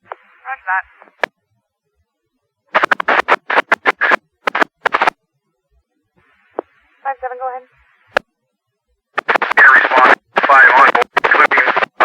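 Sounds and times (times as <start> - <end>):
radio static crackling: 0.0 - 1.3, 2.7 - 5.2, 6.2 - 8.2, 9.2 - 12.0.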